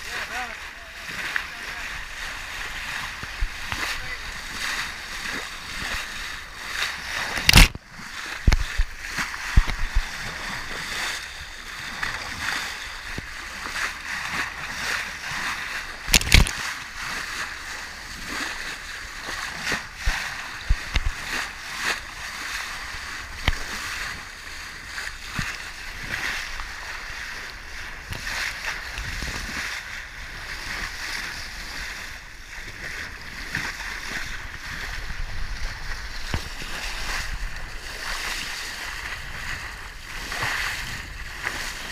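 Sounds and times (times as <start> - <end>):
water rushing along boat hull: 0.0 - 41.9.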